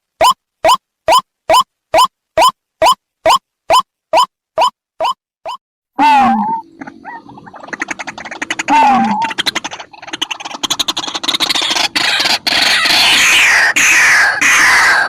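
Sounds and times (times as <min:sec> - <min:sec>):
waterhen gliding call: 0:00.2 - 0:15.0
waterhen rattling calls: 0:00.2 - 0:15.0
harsh repeated bird calls: 0:06.0 - 0:15.0.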